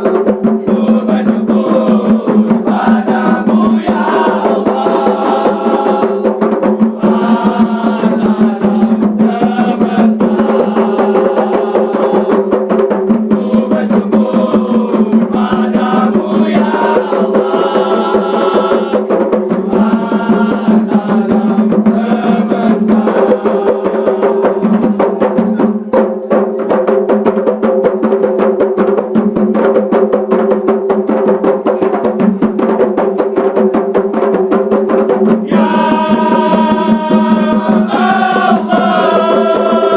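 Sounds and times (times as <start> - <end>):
chant-like singing: 0.0 - 25.7, 35.3 - 39.9
busy percussion: 0.0 - 39.9.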